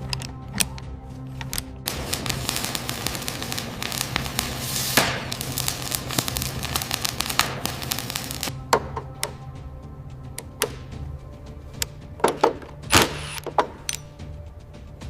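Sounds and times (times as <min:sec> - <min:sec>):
hissing crackling noise blast: 0:01.8 - 0:08.5.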